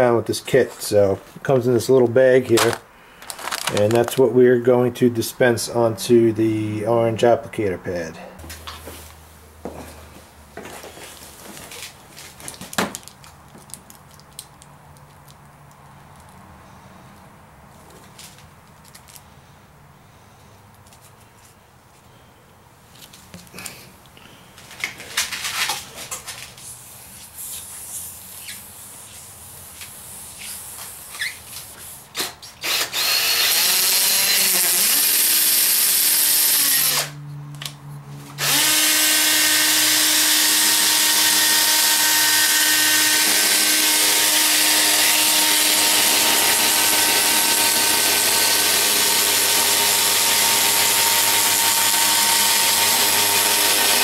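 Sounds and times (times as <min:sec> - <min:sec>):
clicks and handling noises: 0:02.5 - 0:04.3, 0:10.6 - 0:16.4, 0:17.8 - 0:19.3
electric drill whining: 0:32.6 - 0:37.2, 0:38.4 - 0:54.0.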